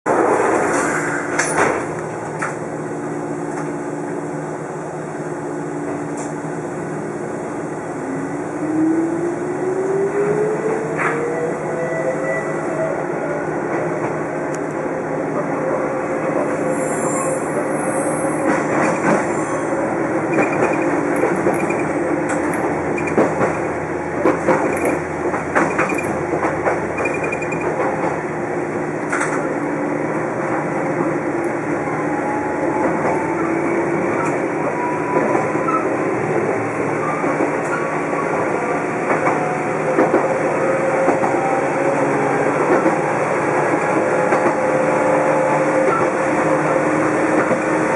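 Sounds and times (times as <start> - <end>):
train running noise: 0.1 - 47.9
wheels clacking over rail joints: 18.4 - 28.3.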